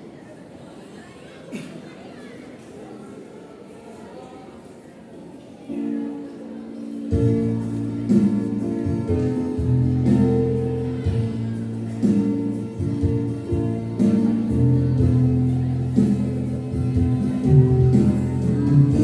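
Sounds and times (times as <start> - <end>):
instrumental accompaniment: 7.1 - 19.0.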